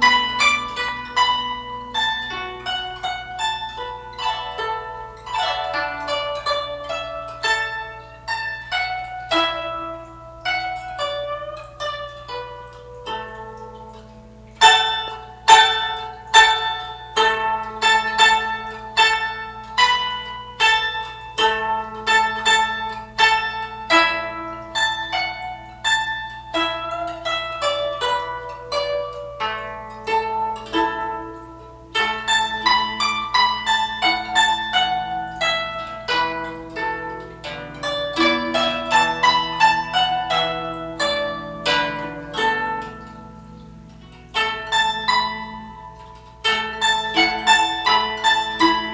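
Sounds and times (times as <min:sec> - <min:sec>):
plucked zither melody: 0:00.0 - 0:48.9.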